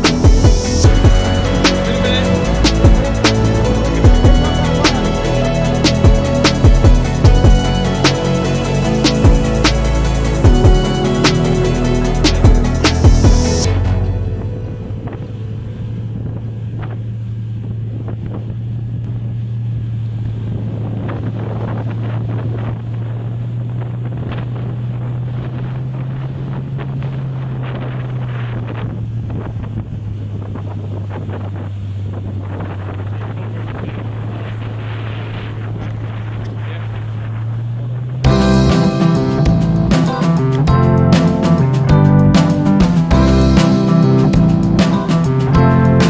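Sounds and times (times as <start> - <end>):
wind buffeting microphone: 20.2 - 38.3.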